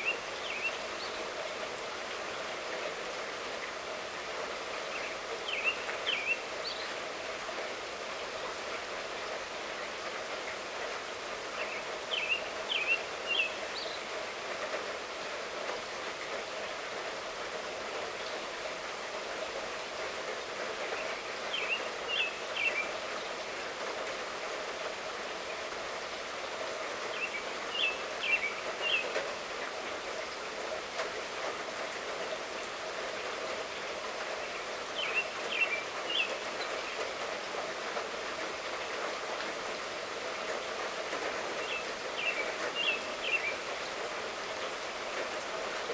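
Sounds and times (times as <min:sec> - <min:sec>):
light rain: 0:00.0 - 0:45.9
bird chirping: 0:27.2 - 0:29.0, 0:41.6 - 0:43.6.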